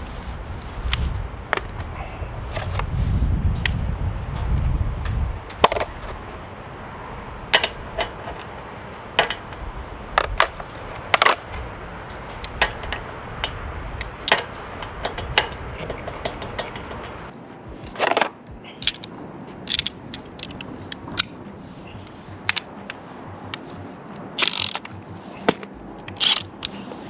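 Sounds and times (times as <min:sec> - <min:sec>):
tools clinking and knocking: 0:00.0 - 0:17.4.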